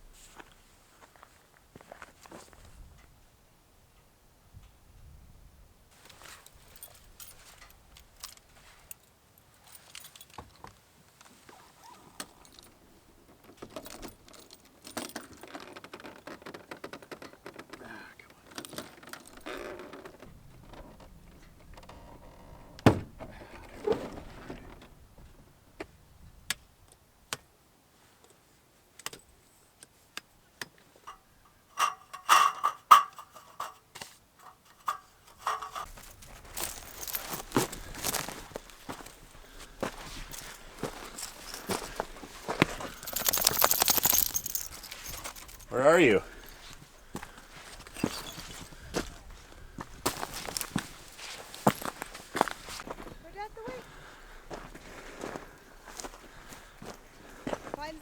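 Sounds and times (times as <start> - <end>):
objects being handled: 31.1 - 48.8, 50.0 - 52.9
metallic jingling: 34.4 - 49.0, 50.1 - 52.8.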